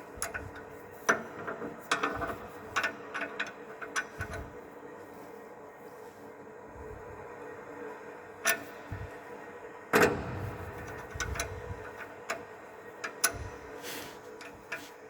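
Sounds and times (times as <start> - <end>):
heating pipes knocking and clicking: 0.0 - 4.6, 9.9 - 15.0
faint hum: 0.0 - 15.0.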